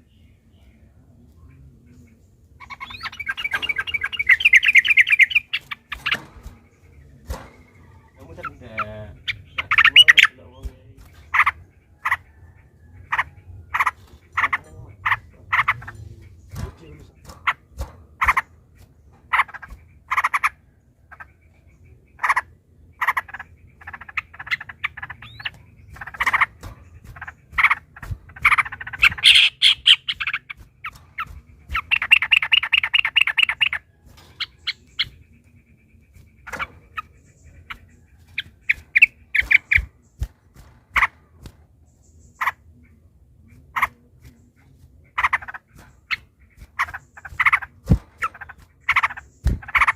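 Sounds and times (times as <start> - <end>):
bird singing bubbly calls: 2.6 - 6.2, 7.7 - 10.4, 22.0 - 35.4
bird rapid trill: 2.6 - 49.9.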